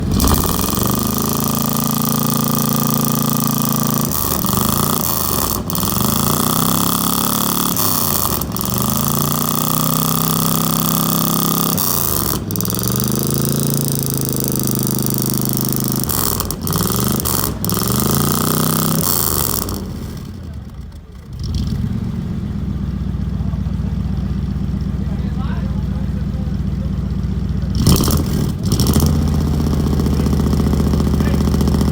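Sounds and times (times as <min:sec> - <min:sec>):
engine revving through exhaust: 0:00.0 - 0:31.9.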